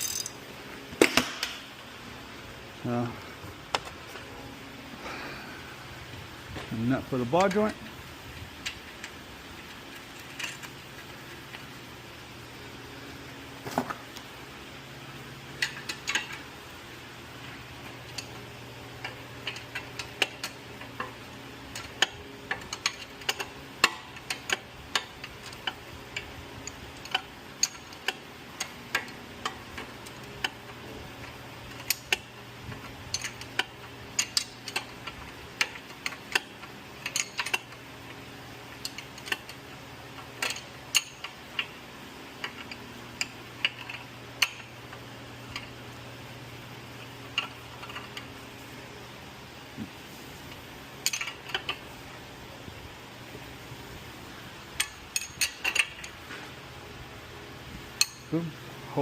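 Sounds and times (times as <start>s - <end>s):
ratchet wrench clicking: 0.0s - 0.4s, 33.1s - 34.9s, 35.6s - 37.8s, 40.4s - 41.7s.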